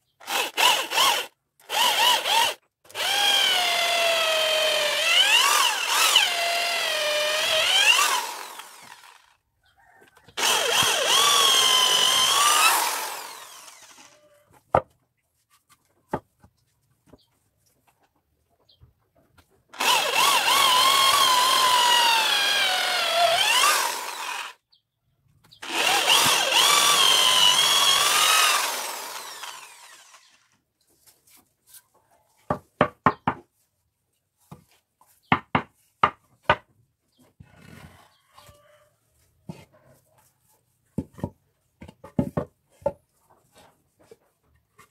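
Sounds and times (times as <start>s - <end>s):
power tool cutting wood: 0.2s - 9.4s, 10.4s - 14.3s, 19.8s - 24.6s, 25.6s - 30.6s.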